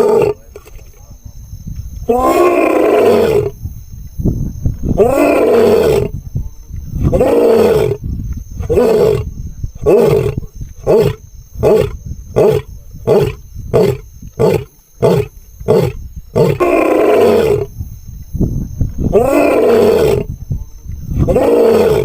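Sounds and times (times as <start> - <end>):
lion roaring: 0.0 - 0.7, 2.1 - 3.6, 4.9 - 6.2, 7.0 - 8.0, 8.6 - 17.7, 19.0 - 20.3, 21.2 - 22.0.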